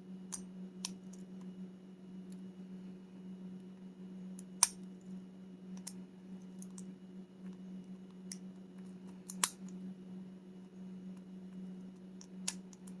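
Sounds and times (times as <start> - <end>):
steady low hum: 0.0 - 13.0
lock pick clicking on pins: 9.2 - 9.8.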